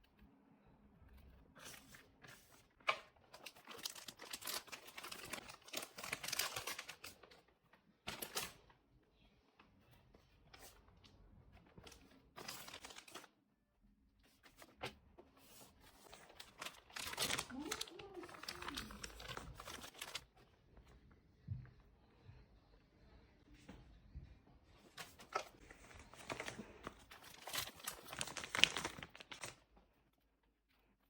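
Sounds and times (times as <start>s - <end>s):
packaging crinkling and tearing: 3.2s - 7.4s, 12.4s - 13.3s, 15.9s - 20.3s, 25.0s - 29.6s.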